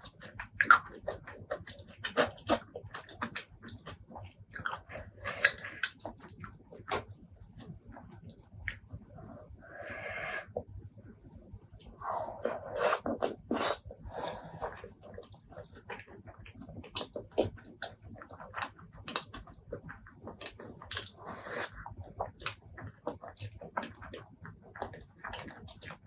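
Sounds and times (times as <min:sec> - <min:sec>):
chewing and lip-smacking: 0:00.0 - 0:09.1, 0:09.8 - 0:26.0
slurping: 0:09.7 - 0:10.6, 0:11.8 - 0:14.9, 0:20.9 - 0:21.8.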